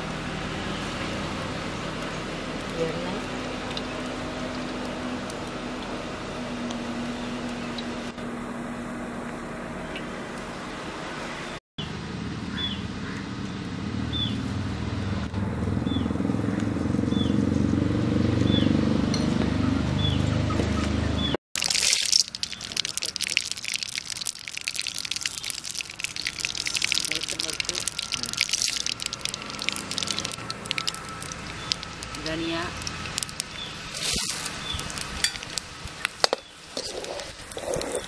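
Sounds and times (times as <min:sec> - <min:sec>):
food sizzling in hot oil: 0:21.6 - 0:36.1.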